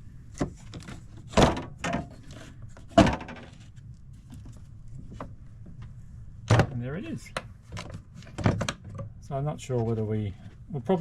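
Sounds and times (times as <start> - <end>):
wooden knocks and thuds: 2.8 - 3.6.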